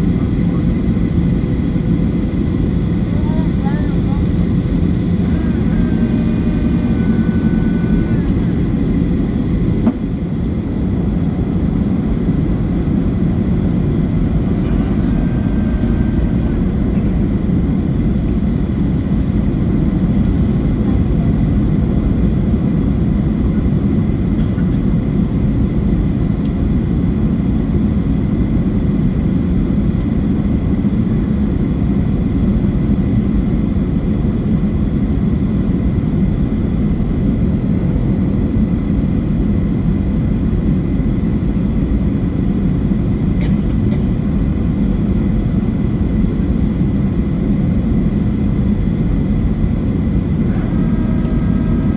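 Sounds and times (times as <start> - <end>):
faint steady whine: 0.0 - 23.8, 42.7 - 51.9
airplane cabin engine rumble: 0.0 - 51.9.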